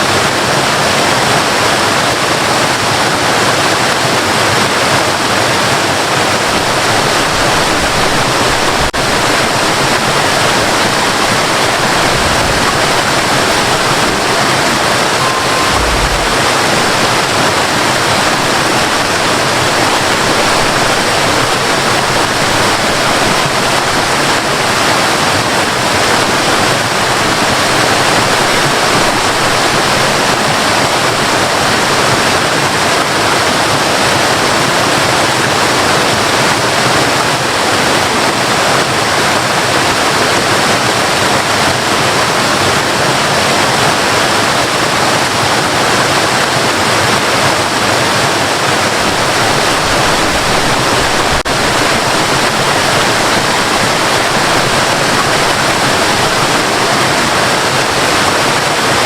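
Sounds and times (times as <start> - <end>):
waterfall rushing: 0.0 - 59.0.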